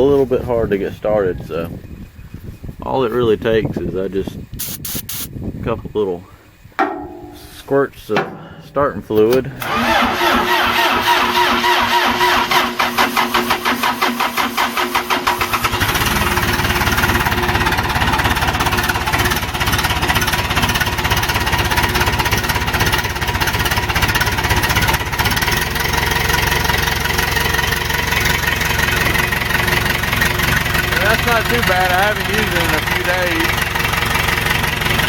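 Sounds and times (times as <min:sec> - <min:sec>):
diesel engine cranking: 0:06.8 - 0:35.0
diesel engine idling: 0:08.2 - 0:12.9, 0:15.5 - 0:35.0.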